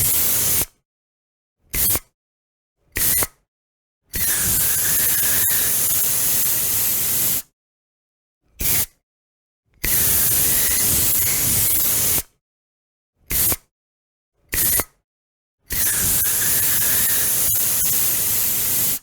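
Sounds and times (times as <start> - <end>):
aerosol spray can hissing: 0.1 - 0.6, 4.8 - 7.4, 15.8 - 19.0.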